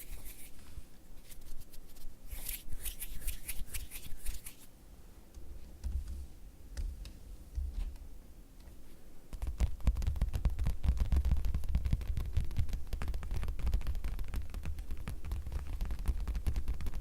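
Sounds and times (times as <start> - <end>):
fingertips tapping on leather: 9.3 - 17.0.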